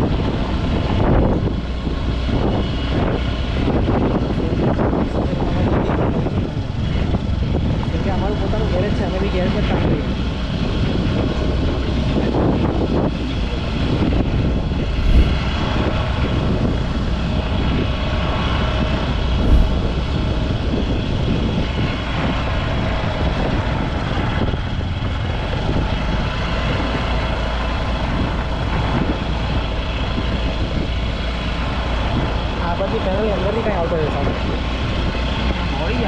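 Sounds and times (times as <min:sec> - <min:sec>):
vehicle engine rumbling: 0:14.4 - 0:17.3, 0:19.2 - 0:21.1.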